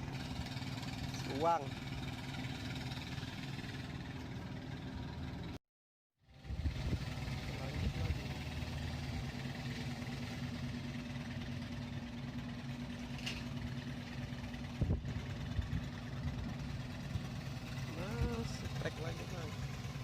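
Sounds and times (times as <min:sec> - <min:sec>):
small engine running: 0:00.0 - 0:05.6, 0:06.2 - 0:20.0.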